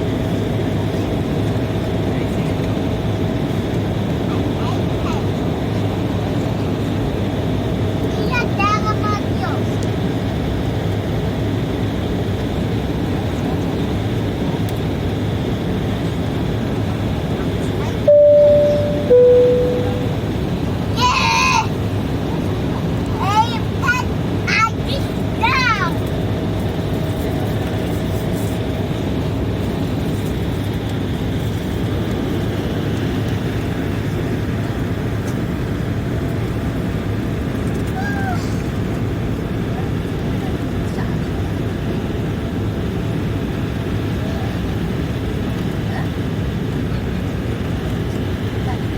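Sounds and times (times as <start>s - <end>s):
airliner cabin engine noise: 0.0s - 48.9s
jet engines humming: 15.3s - 25.6s.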